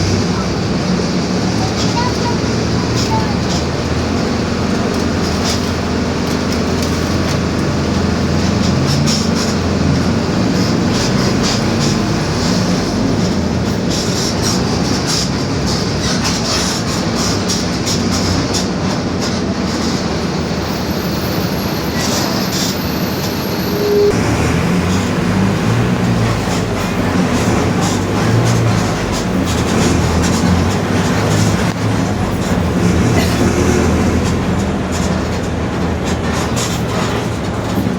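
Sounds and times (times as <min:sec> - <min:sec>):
bus body rattling: 0:00.0 - 0:37.9
bus diesel engine running: 0:00.0 - 0:37.9
growling rear differential: 0:00.0 - 0:37.9
ride noise: 0:00.0 - 0:37.9
short beep: 0:22.8 - 0:24.2.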